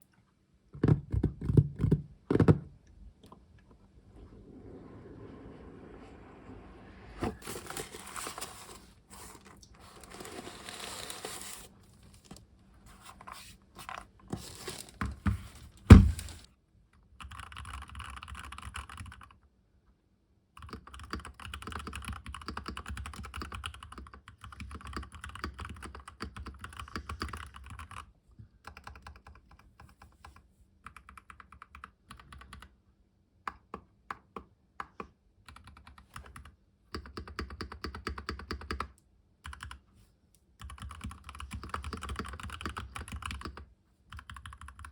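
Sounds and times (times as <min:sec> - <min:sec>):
heavy thump: 0:15.3 - 0:16.4
mechanical keyboard typing: 0:17.2 - 0:19.4, 0:20.6 - 0:30.0, 0:30.8 - 0:32.8, 0:35.5 - 0:39.8, 0:40.6 - 0:44.9.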